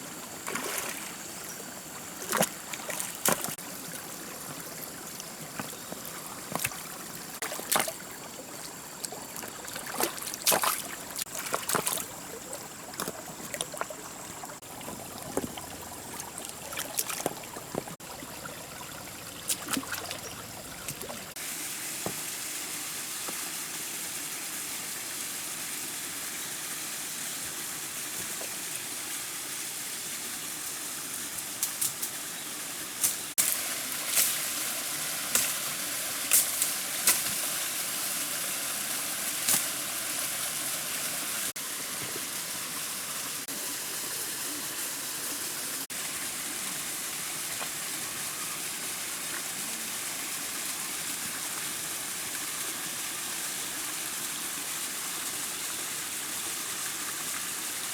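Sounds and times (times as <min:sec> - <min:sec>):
running water rushing: 0:00.0 - 0:57.9.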